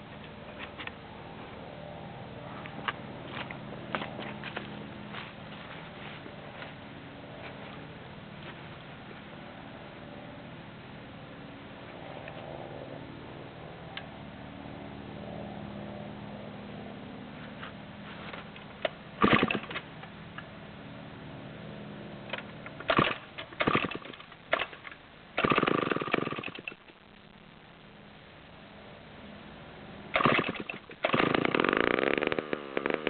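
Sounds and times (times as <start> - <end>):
chainsaw engine firing briefly: 19.2 - 19.8, 22.9 - 24.8, 30.1 - 33.0
chainsaw starter cord pulls: 22.3 - 24.8, 30.2 - 33.0.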